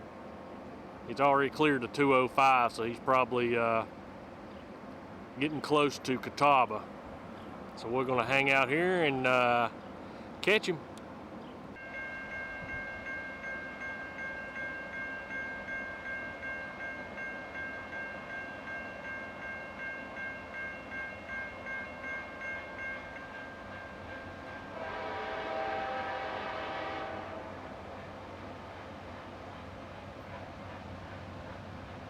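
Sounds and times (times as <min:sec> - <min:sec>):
train horn: 0:24.6 - 0:28.1.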